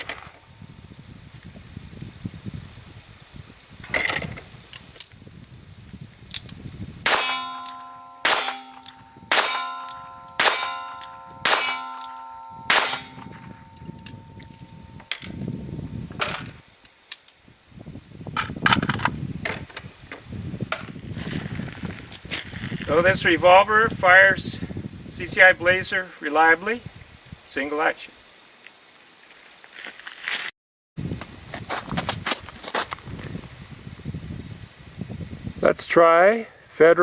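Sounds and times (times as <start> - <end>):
steel target ringing: 7.0 - 15.2.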